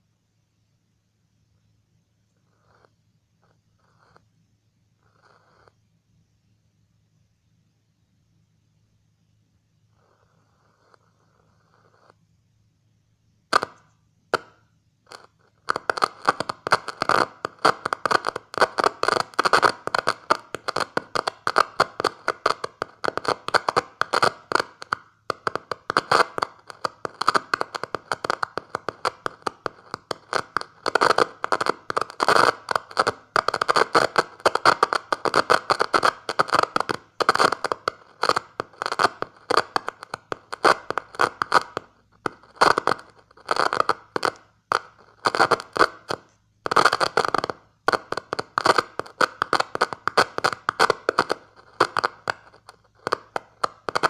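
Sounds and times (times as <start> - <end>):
radio static crackling: 15.1 - 54.0.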